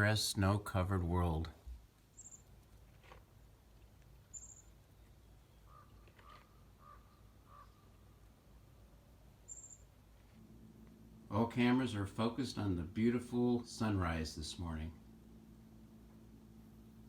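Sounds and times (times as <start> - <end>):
faint low rumble: 0.0 - 17.0
faint short bird calls: 2.2 - 2.5, 4.3 - 4.8, 5.4 - 8.2, 9.5 - 9.9.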